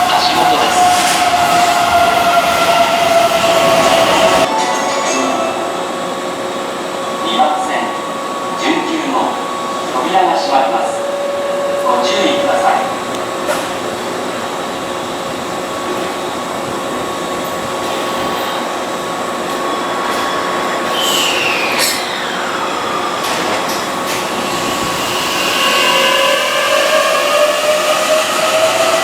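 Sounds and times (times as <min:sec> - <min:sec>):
train rail and wheel noise: 0:00.0 - 0:29.0.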